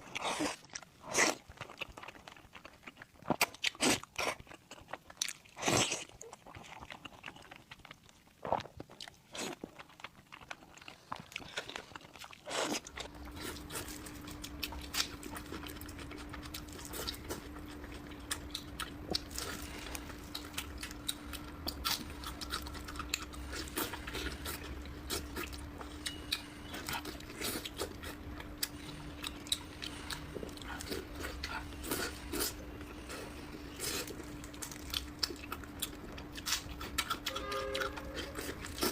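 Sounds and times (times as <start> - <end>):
person chewing food: 0.0 - 38.9
steady low hum: 12.6 - 38.9.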